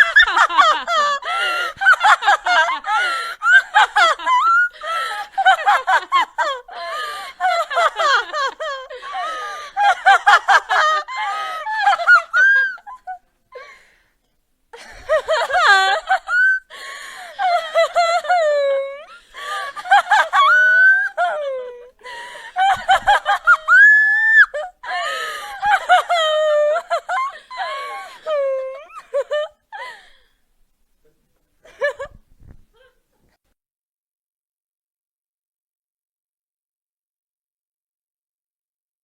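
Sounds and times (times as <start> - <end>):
woman cackling laugh: 0.0 - 13.2, 14.8 - 16.8, 17.4 - 30.1, 31.7 - 32.9.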